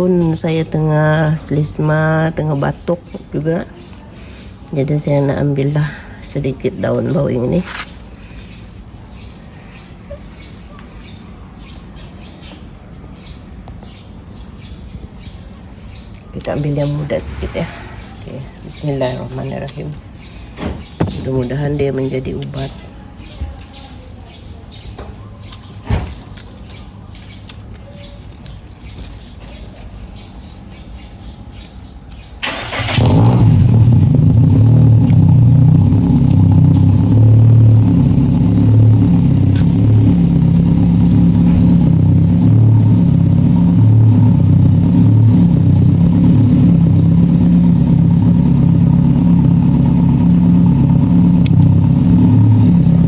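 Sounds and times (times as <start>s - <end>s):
motor low drone: 32.8s - 53.0s.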